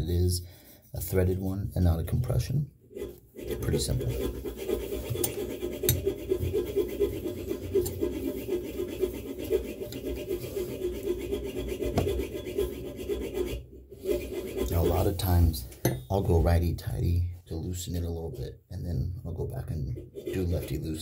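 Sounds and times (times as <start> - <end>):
strap wrench rasping on metal: 2.9 - 14.7.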